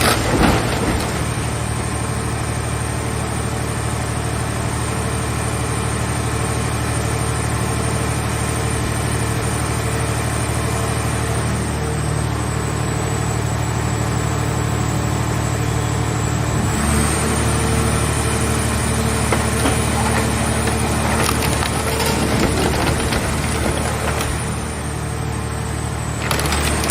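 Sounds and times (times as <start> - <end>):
hydraulic baler hum and whine: 0.0 - 26.9
crackling and creaking: 19.2 - 24.8, 26.2 - 26.9.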